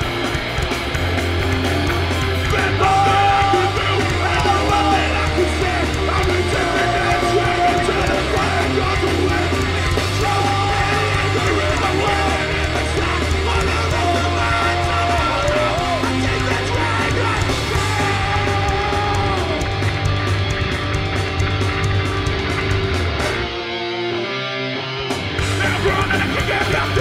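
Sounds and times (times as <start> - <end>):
bass guitar: 0.0 - 27.0
distorted guitars: 0.0 - 27.0
drums: 0.0 - 27.0
shouted vocals: 2.4 - 20.0.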